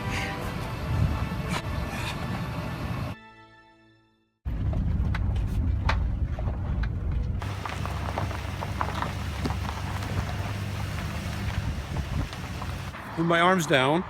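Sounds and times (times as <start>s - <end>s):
van engine rumble: 4.5s - 13.3s
hiss of rain: 7.4s - 13.0s
raindrops ticking on van: 7.4s - 13.0s.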